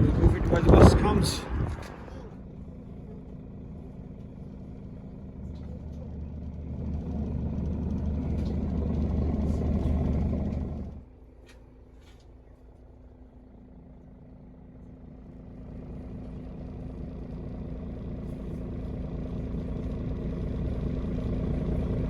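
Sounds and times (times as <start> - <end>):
jet airliner engine noise: 0.0 - 2.4.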